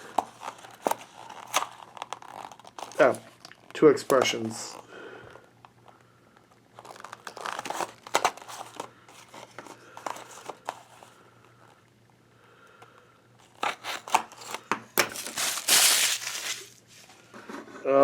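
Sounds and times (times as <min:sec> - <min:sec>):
toy packaging crinkled and torn: 0:00.0 - 0:03.8, 0:06.8 - 0:11.0, 0:13.4 - 0:16.8.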